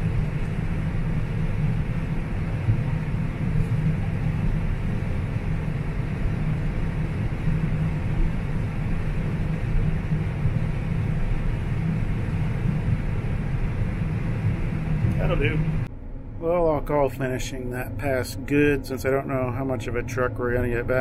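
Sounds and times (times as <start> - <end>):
combine harvester drone: 0.0 - 21.0.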